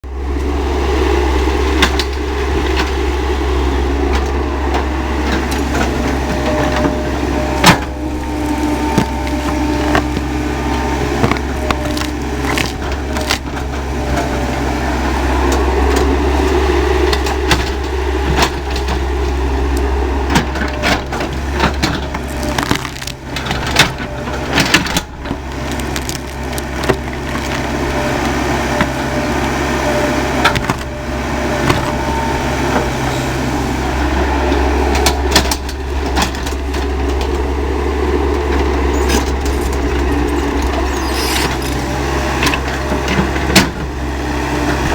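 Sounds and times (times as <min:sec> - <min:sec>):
excavator diesel engine running: 0:00.0 - 0:44.9
material cracking and crunching: 0:11.2 - 0:13.7, 0:22.0 - 0:24.0, 0:24.6 - 0:28.0, 0:38.9 - 0:42.6.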